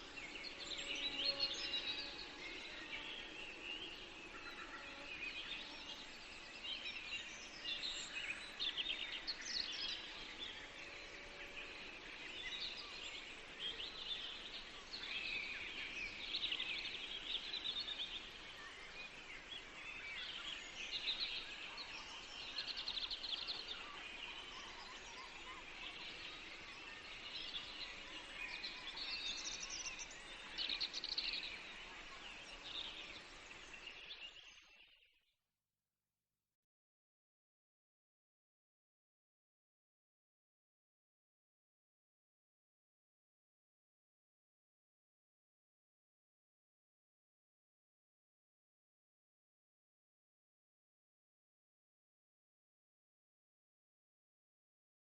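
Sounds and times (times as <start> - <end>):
faint background noise: 0.0 - 34.9
small birds chirping: 0.0 - 35.2.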